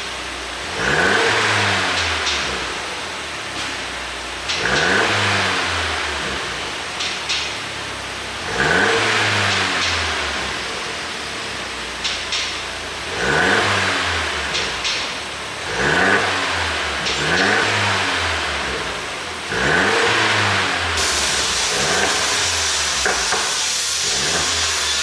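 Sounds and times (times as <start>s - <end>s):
car engine revving: 0.4s - 7.4s, 8.2s - 25.0s
exhaust pops and crackles: 16.9s - 25.0s.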